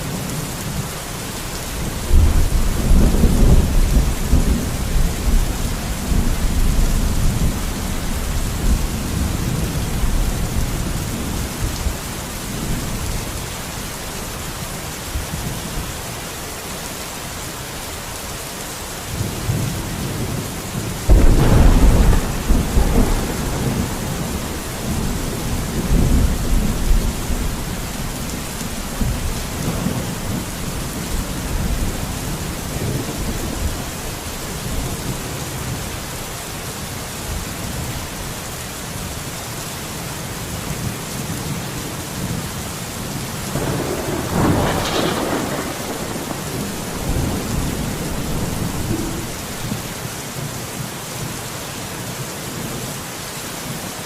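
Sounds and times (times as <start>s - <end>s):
steady rain: 0.0s - 54.0s
thunder rumbling and cracking: 1.7s - 13.3s, 19.2s - 35.8s, 43.5s - 50.0s.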